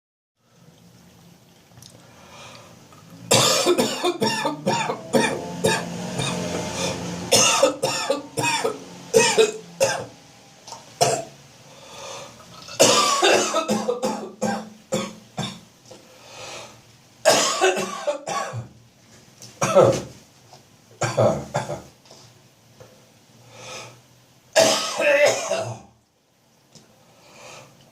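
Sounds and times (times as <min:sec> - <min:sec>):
person coughing phlegmy: 0:03.3 - 0:06.4, 0:07.3 - 0:10.1, 0:12.7 - 0:15.6, 0:17.3 - 0:18.8, 0:19.6 - 0:20.1, 0:21.0 - 0:22.0, 0:24.6 - 0:25.9
person clearing throat: 0:03.3 - 0:10.1, 0:12.7 - 0:15.6, 0:17.3 - 0:18.7, 0:19.6 - 0:20.1, 0:21.0 - 0:21.9, 0:24.6 - 0:25.9.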